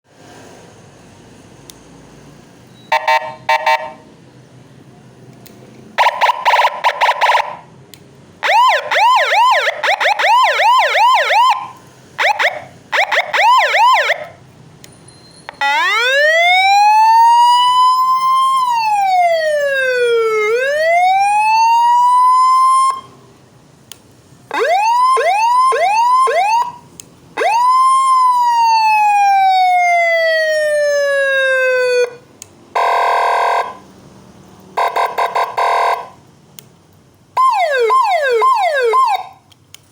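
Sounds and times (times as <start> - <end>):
electronic siren tones: 2.9 - 4.0, 8.4 - 14.3, 15.5 - 23.1, 24.5 - 26.8, 37.4 - 39.4.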